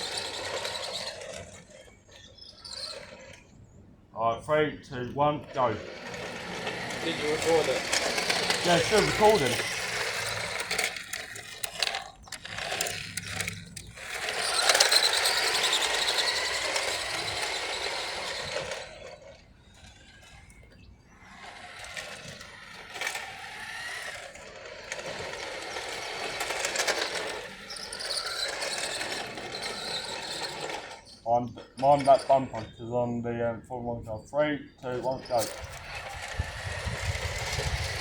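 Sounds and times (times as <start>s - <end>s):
toy car motors whining: 0.0s - 38.0s.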